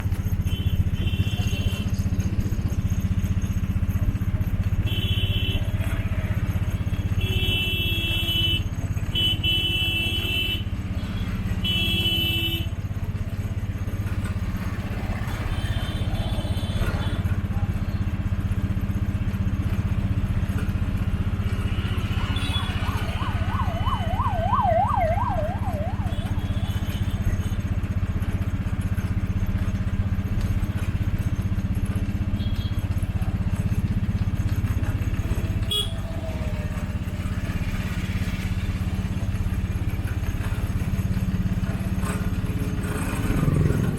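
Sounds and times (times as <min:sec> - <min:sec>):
street traffic rumble: 0:00.0 - 0:43.9
vehicle horn honks: 0:00.4 - 0:02.0, 0:07.2 - 0:12.8, 0:26.0 - 0:27.4, 0:35.7 - 0:36.0
warbling siren-like horn: 0:21.9 - 0:26.9.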